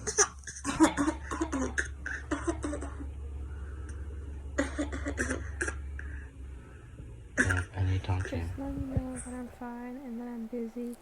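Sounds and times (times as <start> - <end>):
baby fake coughing: 0.0 - 3.0, 4.6 - 5.8
steady low hum: 0.0 - 11.0.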